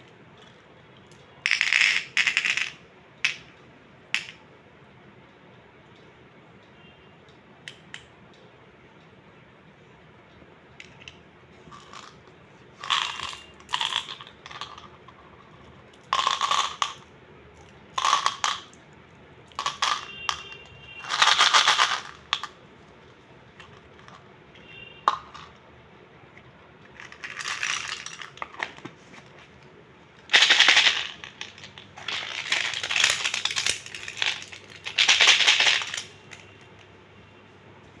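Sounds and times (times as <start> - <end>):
plastic toy crinkling and rattling: 10.8 - 18.8, 19.5 - 22.6, 26.8 - 29.4, 30.2 - 36.8.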